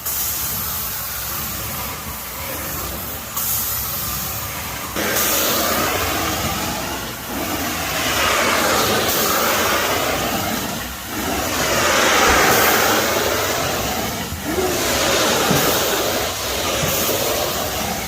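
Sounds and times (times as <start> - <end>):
carpet extraction wand suction: 5.0 - 18.0.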